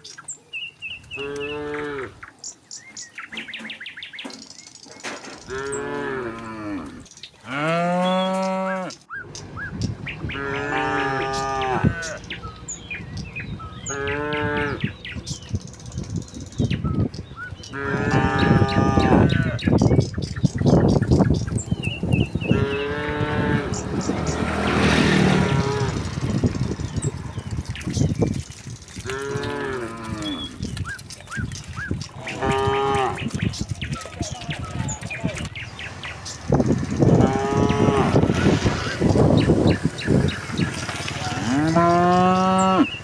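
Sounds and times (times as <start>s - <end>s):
birds chirping: 0.0s - 43.0s
cattle mooing: 1.1s - 2.2s, 5.4s - 9.0s, 10.3s - 12.4s, 13.8s - 14.9s, 17.7s - 19.7s, 21.7s - 28.0s, 28.9s - 30.7s, 32.1s - 33.4s, 35.8s - 43.0s.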